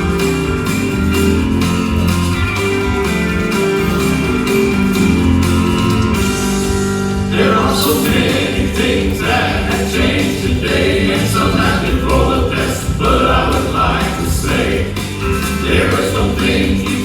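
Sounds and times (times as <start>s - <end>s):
gospel band accompaniment: 0.0s - 17.0s
voices singing together: 7.2s - 17.0s.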